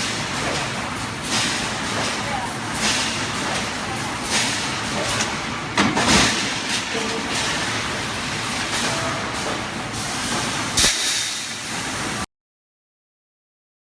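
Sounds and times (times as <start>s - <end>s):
welding machine hissing: 6.4s - 12.2s.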